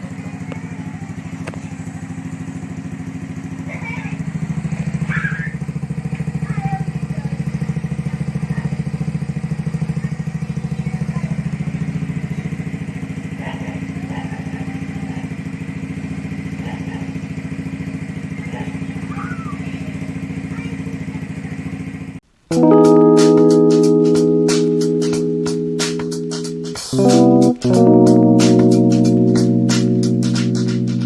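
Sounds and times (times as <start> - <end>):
scooter engine idling: 0.0 - 22.1.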